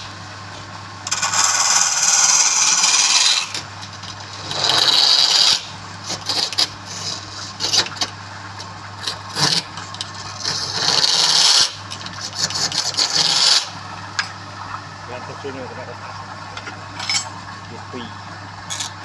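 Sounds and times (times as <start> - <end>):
steady low hum: 0.0 - 19.0
tool scraping wood: 1.1 - 3.6, 4.4 - 8.1, 9.0 - 13.8.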